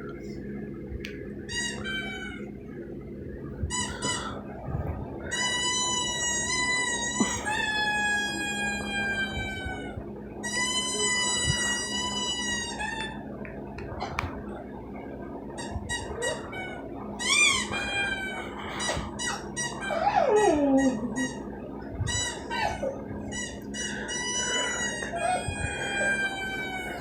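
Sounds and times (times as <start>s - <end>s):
dog whining: 16.0s - 21.4s, 22.1s - 27.0s.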